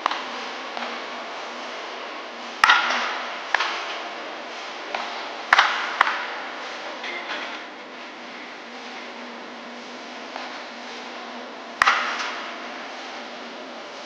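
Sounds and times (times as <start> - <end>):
wooden bat hitting balls: 2.6 - 3.8, 4.9 - 6.4, 11.8 - 12.5.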